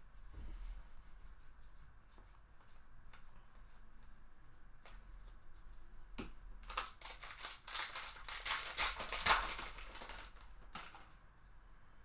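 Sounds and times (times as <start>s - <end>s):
foil wrapper tearing and crinkling: 6.6s - 11.1s.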